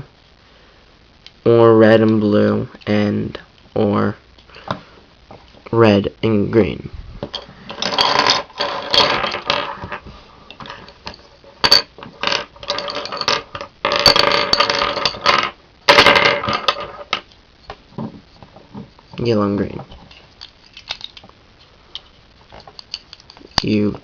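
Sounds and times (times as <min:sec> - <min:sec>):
plastic cube pieces clattering: 0:07.7 - 0:10.0, 0:10.6 - 0:17.1, 0:20.4 - 0:21.3.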